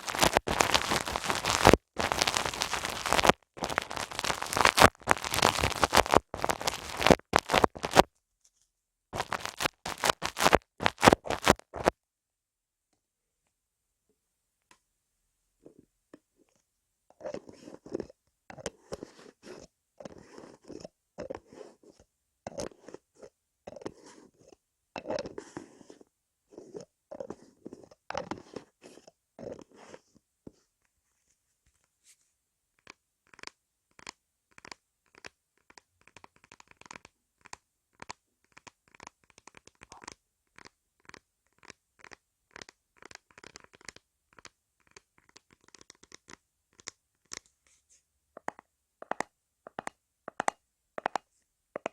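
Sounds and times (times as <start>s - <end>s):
hands rubbing on microphone: 0.0s - 8.1s, 9.2s - 11.9s
taps and flicks on microphone: 9.2s - 11.9s.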